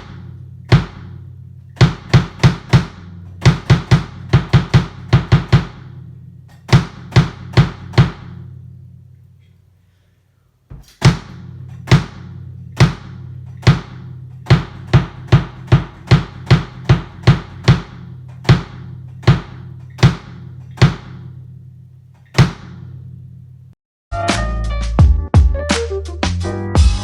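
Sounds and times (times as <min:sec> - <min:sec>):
kick drum booming: 0:00.0 - 0:06.1, 0:06.7 - 0:08.5, 0:10.7 - 0:21.4, 0:22.4 - 0:23.0.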